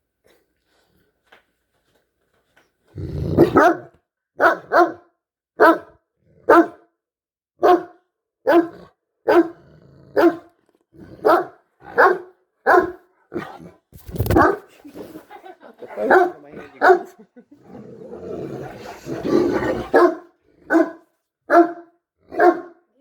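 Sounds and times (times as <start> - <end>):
dogs barking deeply: 3.4 - 5.0, 8.5 - 10.5, 11.2 - 13.6, 16.0 - 17.2, 18.4 - 22.7.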